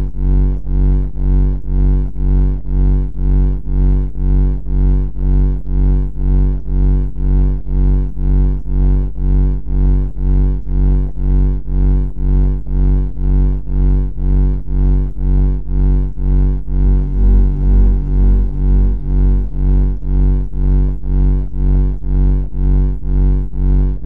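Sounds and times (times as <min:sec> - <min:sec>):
low pulsing drone: 0:11.1 - 0:24.0.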